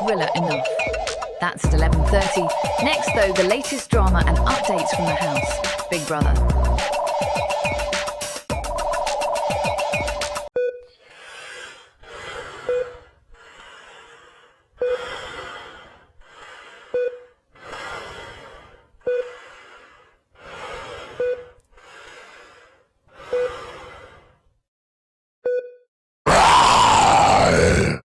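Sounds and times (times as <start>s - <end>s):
heavy rhythmic breathing: 0.0s - 24.7s.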